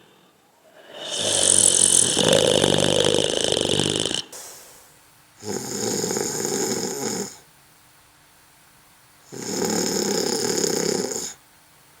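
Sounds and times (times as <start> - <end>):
person snoring: 0.0 - 7.4, 9.3 - 11.4.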